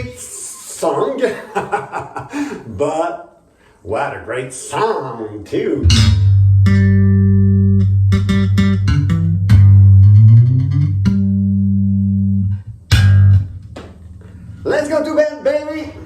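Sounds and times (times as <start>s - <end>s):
electric bass guitar notes: 5.8s - 14.6s.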